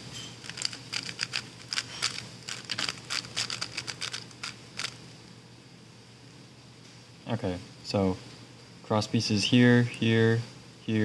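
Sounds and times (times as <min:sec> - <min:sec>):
speed cube clicking: 0:00.4 - 0:05.0.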